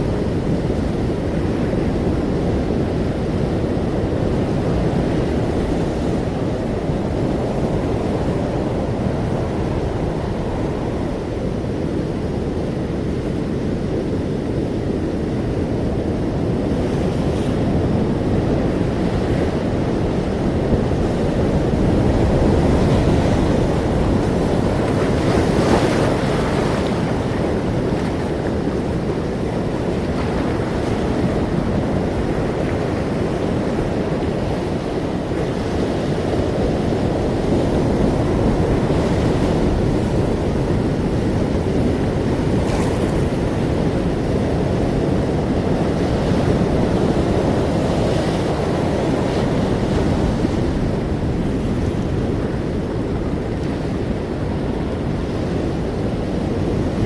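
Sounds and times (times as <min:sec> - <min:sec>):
ocean waves: 0:00.0 - 0:57.0
large wave breaking: 0:18.5 - 0:57.0.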